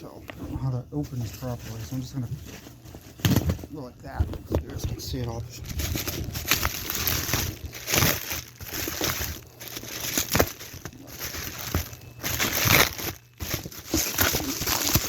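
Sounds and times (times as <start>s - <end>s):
bubble wrap crinkling: 1.0s - 15.0s.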